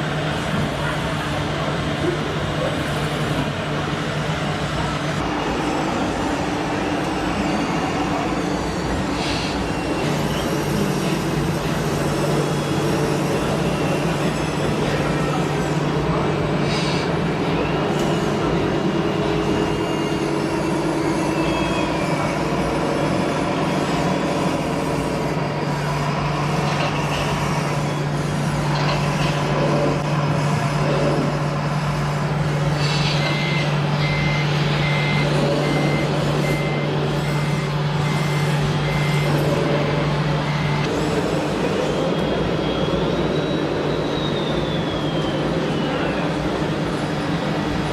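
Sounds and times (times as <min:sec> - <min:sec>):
reversing beeper: 0:33.0 - 0:40.9, 0:42.3 - 0:46.4.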